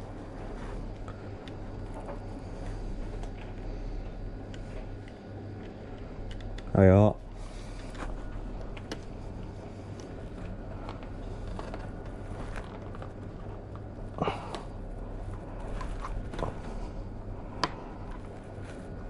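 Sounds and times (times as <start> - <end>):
low electrical hum: 0.0 - 19.0
plastic handling clicks and rubs: 7.6 - 14.0.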